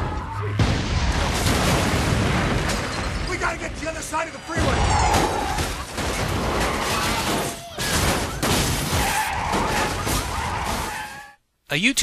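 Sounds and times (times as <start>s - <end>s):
rumbling and crashing debris: 0.0s - 11.3s.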